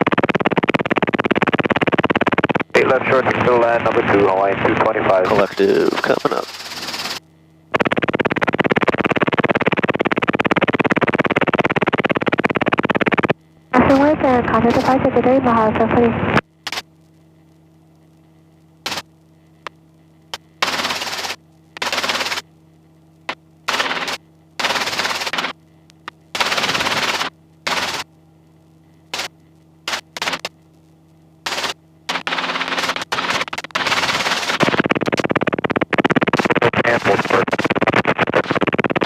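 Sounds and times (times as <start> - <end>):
helicopter engine and rotor hum: 0.0 - 37.3
rotor and wind noise bursts: 5.3 - 16.9, 18.8 - 19.1, 20.3 - 22.5, 23.3 - 25.6, 26.3 - 28.1, 29.1 - 30.5, 31.4 - 39.0.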